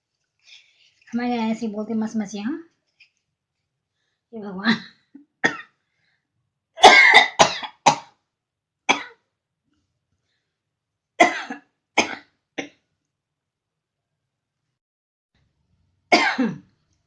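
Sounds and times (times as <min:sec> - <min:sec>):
woman coughing: 0:06.8 - 0:08.2, 0:11.2 - 0:12.7, 0:16.1 - 0:16.6.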